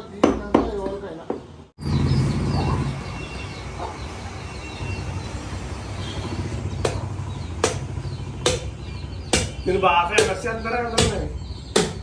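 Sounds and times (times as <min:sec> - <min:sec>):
small birds chirping: 0:00.0 - 0:12.0
knife chopping meat: 0:06.8 - 0:12.0.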